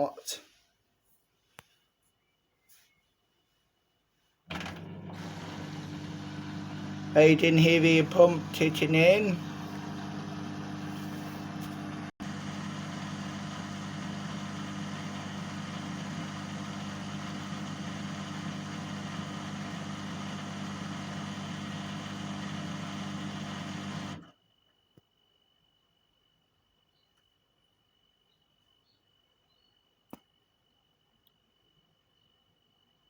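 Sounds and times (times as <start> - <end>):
washing machine drain pump humming: 4.5 - 24.3.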